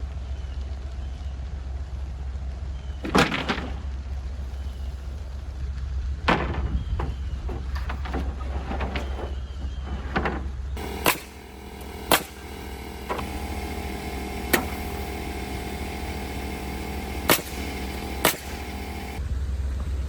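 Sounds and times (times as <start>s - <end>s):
nail gun firing: 3.0s - 3.9s, 10.1s - 19.2s
motor humming: 3.0s - 5.6s, 6.3s - 19.2s.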